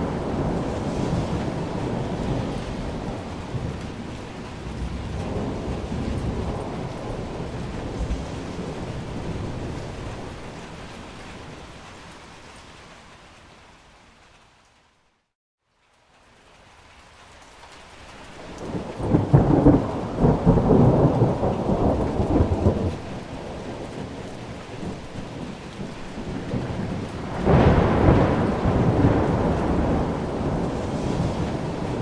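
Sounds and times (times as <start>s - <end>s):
rolling thunder: 0.0s - 11.2s, 18.5s - 32.0s
rain falling: 0.0s - 32.0s.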